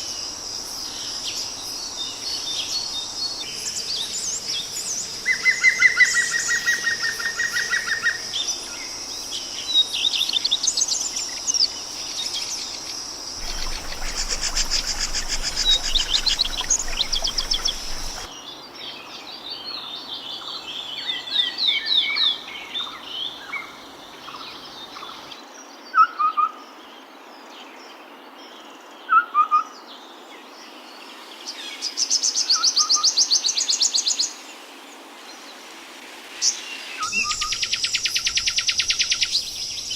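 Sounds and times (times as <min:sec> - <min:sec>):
birds singing and calling: 0:13.4 - 0:18.3.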